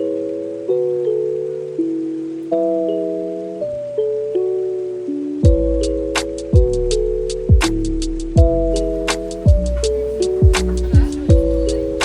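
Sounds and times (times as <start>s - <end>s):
kick drum: 5.4s - 5.8s, 6.5s - 6.8s, 7.5s - 7.8s, 8.4s - 12.0s
held synth chords: 8.7s - 12.0s
hi-hat ticks: 8.8s - 12.0s.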